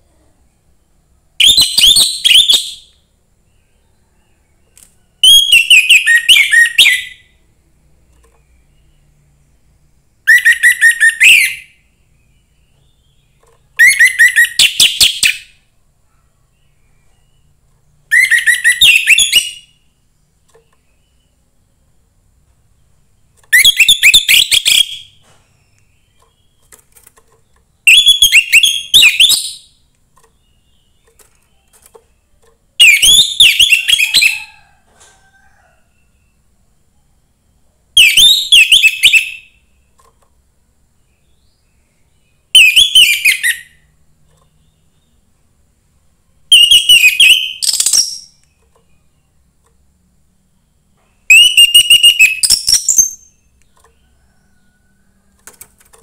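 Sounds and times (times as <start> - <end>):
thrush singing whistled phrases: 1.4 - 2.9, 5.2 - 7.3, 10.3 - 11.8, 13.8 - 15.5, 18.1 - 19.8, 23.5 - 25.1, 27.8 - 29.7, 32.8 - 34.4, 38.0 - 39.6, 42.5 - 43.8, 46.5 - 48.3, 51.3 - 53.4.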